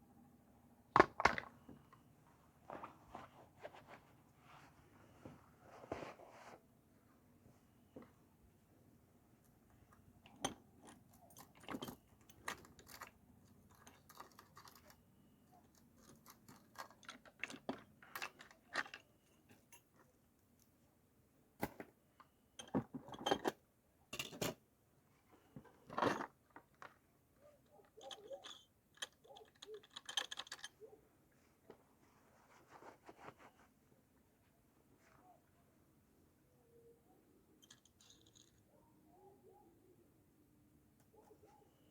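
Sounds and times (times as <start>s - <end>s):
metal tools clicking and clinking: 10.2s - 15.0s, 16.0s - 20.0s, 24.2s - 24.6s, 27.8s - 30.9s, 37.6s - 38.6s.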